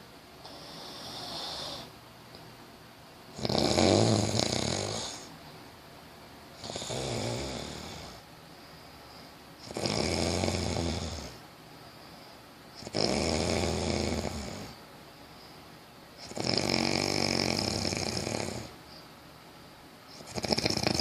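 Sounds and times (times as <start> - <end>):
person snoring: 0.4 - 1.9, 3.4 - 5.3, 6.6 - 8.2, 9.6 - 11.4, 12.8 - 14.8, 16.2 - 18.7, 20.2 - 21.0
soft breath: 11.3 - 12.6.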